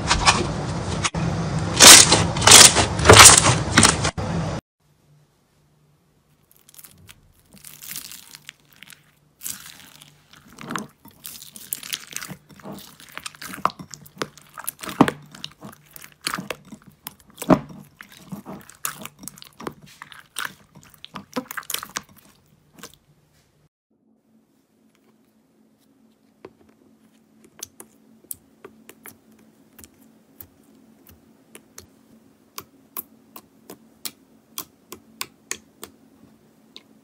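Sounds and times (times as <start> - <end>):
slime crackling and popping: 6.4 - 22.9.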